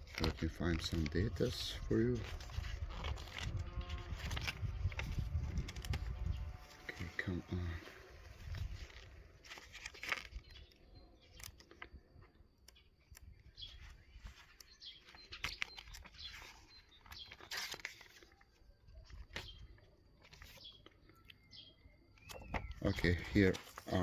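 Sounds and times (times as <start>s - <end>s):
paper pages turning and rustling: 0.0s - 11.9s, 13.7s - 21.2s, 22.2s - 24.0s.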